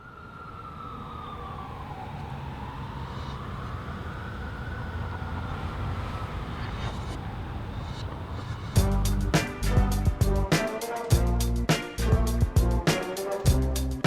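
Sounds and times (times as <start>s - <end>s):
siren wailing: 0.0s - 10.3s
low rumble: 2.6s - 10.5s.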